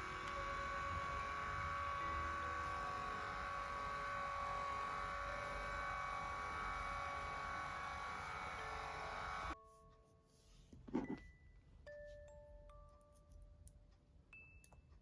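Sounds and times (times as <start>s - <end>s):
massage cushion motor whining: 0.0s - 9.6s.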